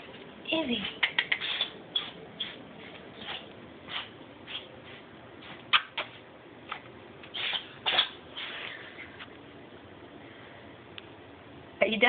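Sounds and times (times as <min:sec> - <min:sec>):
pet sneezing: 0:07.3 - 0:08.8.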